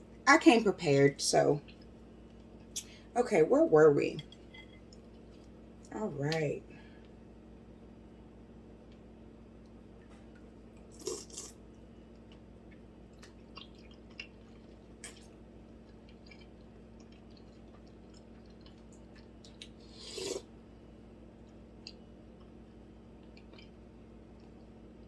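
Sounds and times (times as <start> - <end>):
chewing and mouth clicks: 10.0 - 20.4, 21.4 - 22.6, 23.2 - 24.8.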